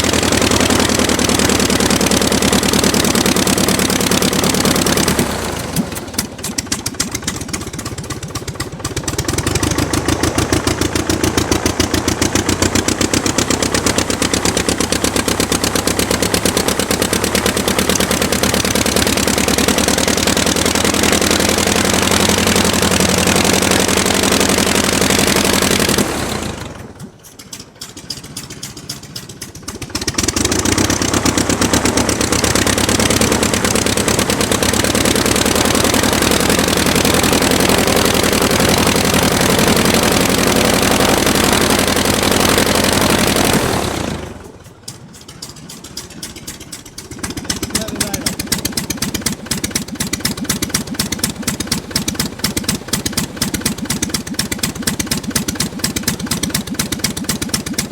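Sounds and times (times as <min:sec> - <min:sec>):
aircraft engine running: 0:00.0 - 0:57.9.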